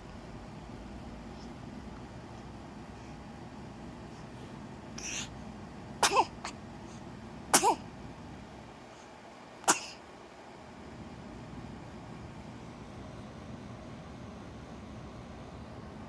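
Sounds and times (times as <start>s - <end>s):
baby hiccuping: 6.0s - 6.6s, 7.5s - 7.8s.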